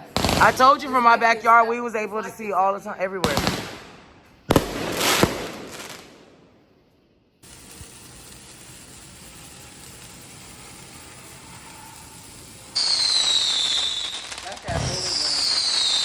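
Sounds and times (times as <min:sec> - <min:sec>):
firework bang: 0:03.3 - 0:06.5, 0:07.4 - 0:16.0
steady hiss: 0:07.4 - 0:16.0
whistling firework falling pitch: 0:07.4 - 0:16.0.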